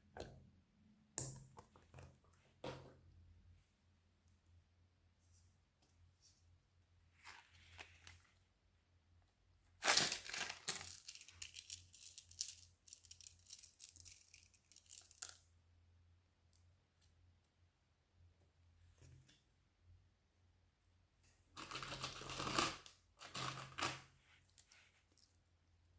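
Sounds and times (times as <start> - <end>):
crinkly slime crackling: 9.8 - 15.3.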